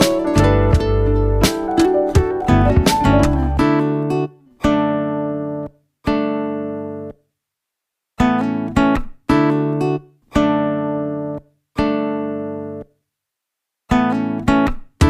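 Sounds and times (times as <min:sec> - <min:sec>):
guitar chords ringing: 0:00.0 - 0:05.6.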